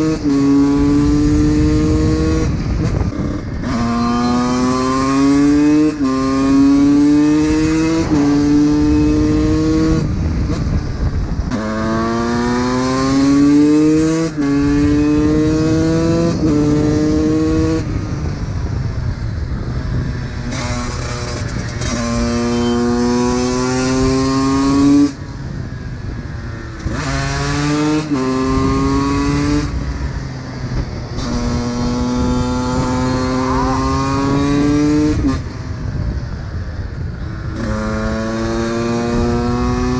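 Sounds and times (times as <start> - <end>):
two-stroke engine accelerating: 0.0 - 39.9.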